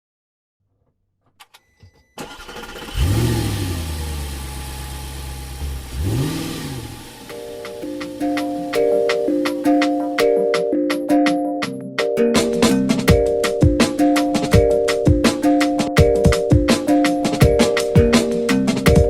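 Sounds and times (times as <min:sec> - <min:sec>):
engine starting and revving: 0:02.2 - 0:08.7.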